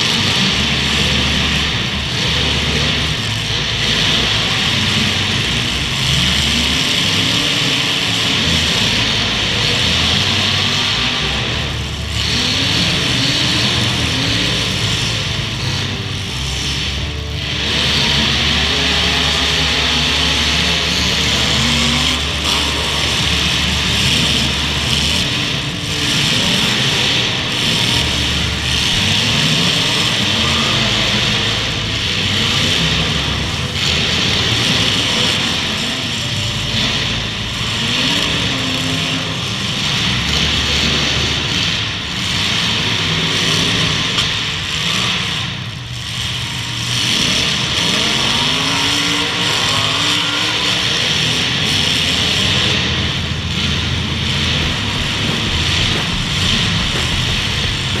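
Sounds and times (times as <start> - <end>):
arena noise: 0.0 - 58.0
car engines revving: 0.0 - 58.0.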